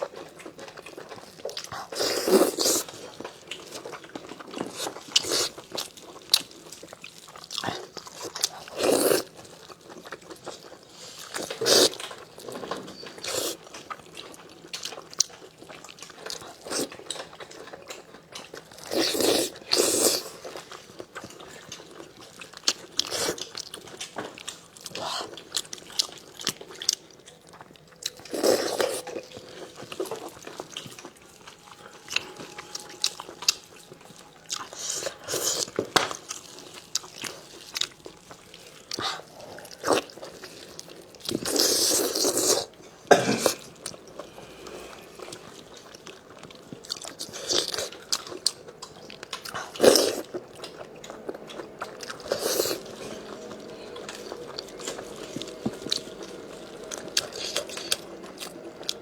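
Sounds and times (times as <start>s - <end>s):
person biting and chewing food: 26.0s - 46.0s.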